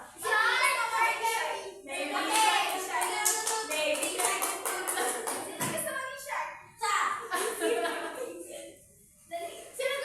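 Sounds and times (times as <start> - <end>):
hands clapping: 2.2 - 5.8.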